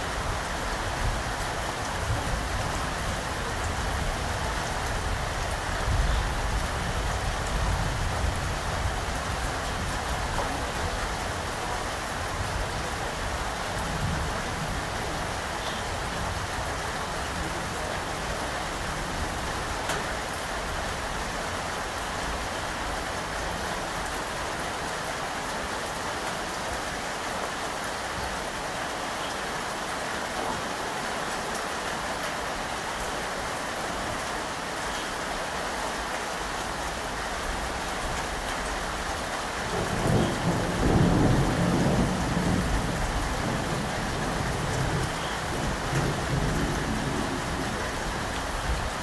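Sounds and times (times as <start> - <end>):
steady rain hiss: 0.0 - 49.0
raindrop ticks: 19.8 - 20.1.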